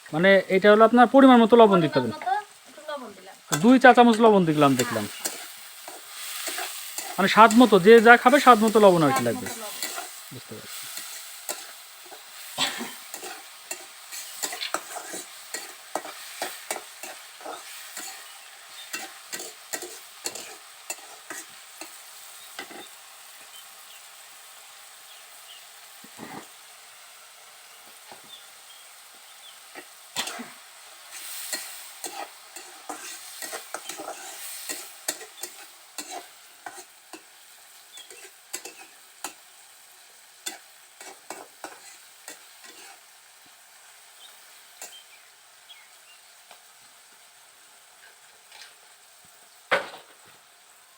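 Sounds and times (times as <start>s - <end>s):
vegetables sizzling in oil: 0.0s - 50.9s
spatula scraping a pan: 4.7s - 23.0s, 29.7s - 39.4s, 40.4s - 43.1s.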